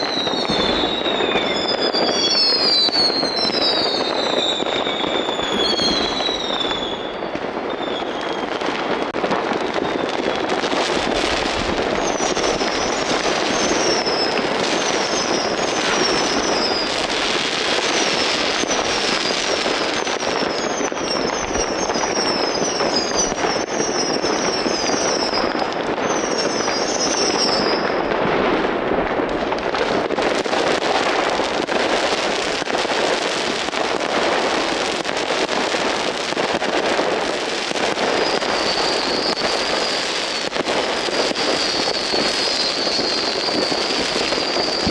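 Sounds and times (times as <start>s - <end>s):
high falling whistles: 0.0s - 8.6s, 12.0s - 17.0s, 38.2s - 40.5s, 41.2s - 44.9s
fireworks bangs and crackling: 0.0s - 44.9s.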